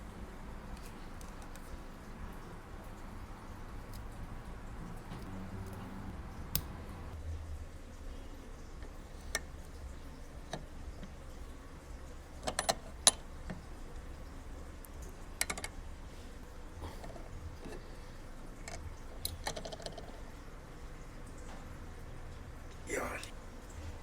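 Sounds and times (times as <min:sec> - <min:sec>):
small tools clicking and tapping: 0:15.4 - 0:15.8.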